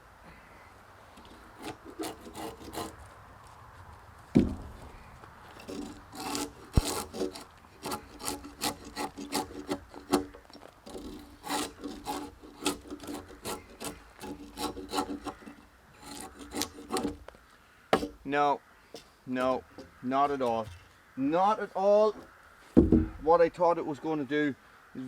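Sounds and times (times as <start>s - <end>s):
angle grinder rasping into log: 1.2s - 3.0s, 5.5s - 17.4s.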